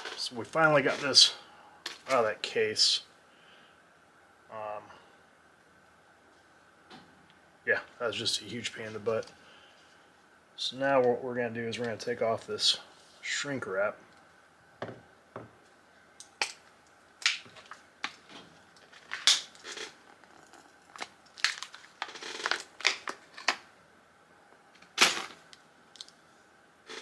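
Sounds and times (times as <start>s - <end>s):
plastic shrink wrap tearing: 18.8s - 23.6s.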